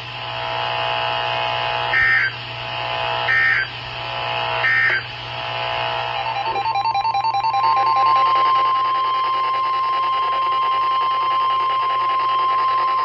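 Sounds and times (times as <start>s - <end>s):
digital data bursts: 6.1s - 8.5s
warbling two-tone sound: 6.1s - 8.7s
steady background tones: 6.1s - 8.9s
steady warning alarm tone: 6.1s - 13.0s.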